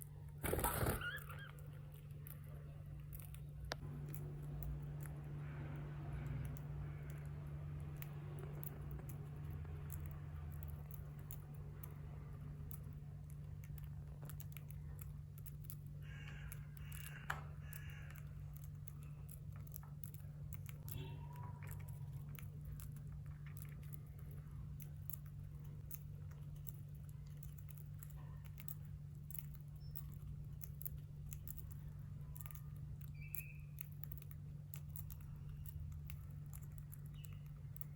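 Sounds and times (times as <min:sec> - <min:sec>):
birds cracking seeds: 0:00.0 - 0:37.9
bird chirps: 0:00.6 - 0:01.8, 0:33.1 - 0:33.9.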